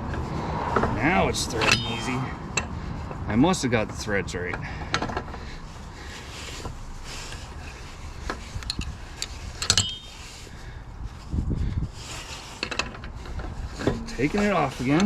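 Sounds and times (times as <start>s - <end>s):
die scraping on threads: 0.9s - 2.4s, 6.6s - 10.5s, 12.1s - 15.0s.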